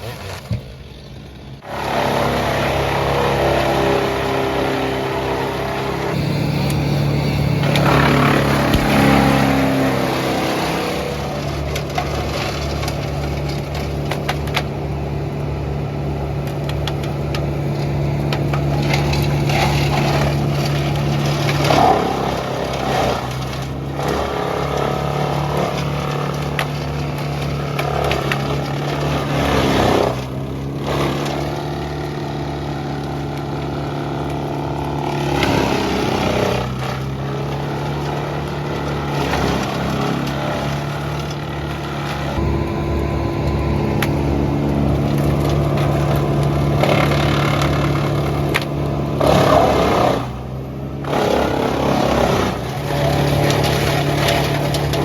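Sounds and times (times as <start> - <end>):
engine running: 0.0 - 55.0
sharp knocks and cracks: 7.6 - 14.8, 16.3 - 42.4, 43.4 - 50.4.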